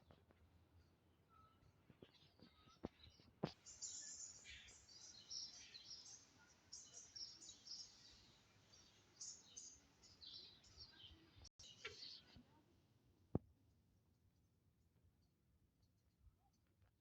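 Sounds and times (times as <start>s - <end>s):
small birds chirping: 0.0s - 12.6s.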